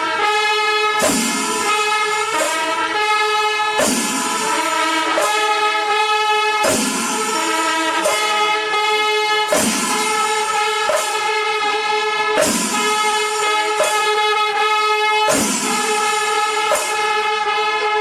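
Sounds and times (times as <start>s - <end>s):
instrumental music: 0.0s - 18.0s
drum hits: 1.0s - 2.6s, 3.8s - 5.6s, 6.6s - 8.3s, 9.5s - 11.5s, 12.4s - 14.0s, 15.3s - 17.1s.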